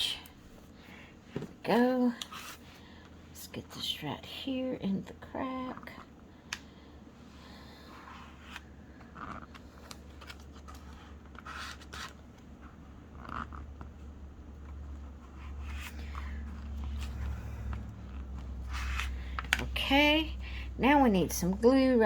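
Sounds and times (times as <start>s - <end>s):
low steady hum: 0.0s - 22.0s
paper rustling and scraping: 7.9s - 13.7s, 14.6s - 19.8s.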